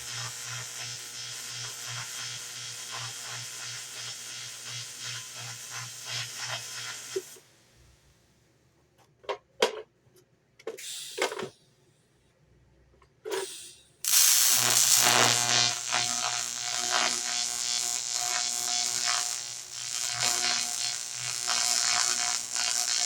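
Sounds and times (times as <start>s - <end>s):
welding arc buzzing: 0.0s - 7.4s, 14.0s - 23.0s.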